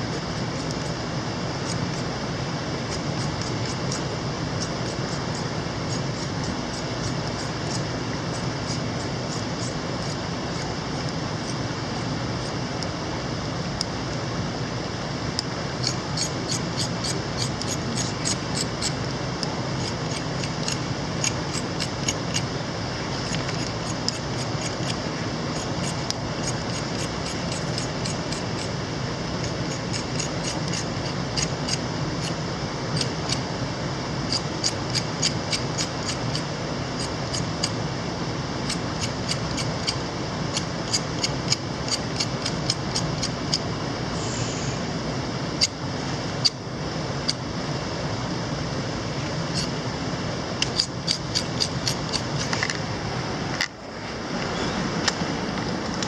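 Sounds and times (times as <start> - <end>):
sharp high clicks and ticks: 15.8 - 19.0, 23.2 - 28.7, 29.4 - 32.4, 34.3 - 37.8, 38.7 - 43.6, 50.6 - 52.7.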